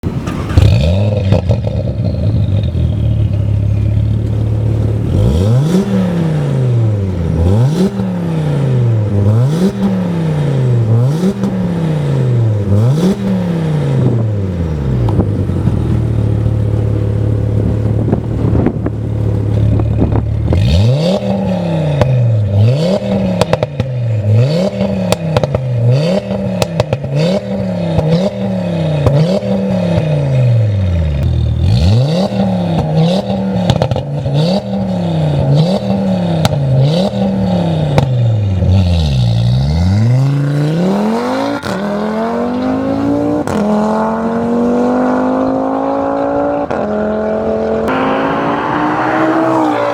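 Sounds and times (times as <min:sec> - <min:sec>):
car engine idling and revving: 0:00.0 - 0:49.9
exhaust pops and crackles: 0:15.0 - 0:20.6.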